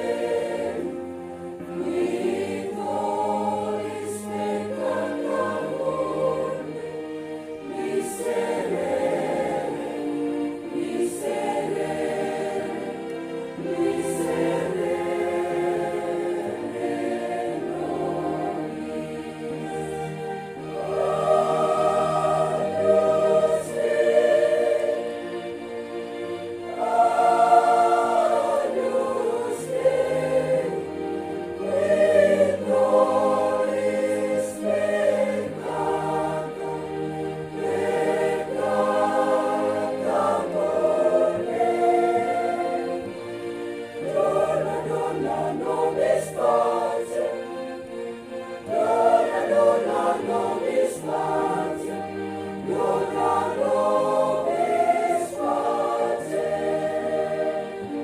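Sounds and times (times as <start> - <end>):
church choir singing: 0.0 - 58.0.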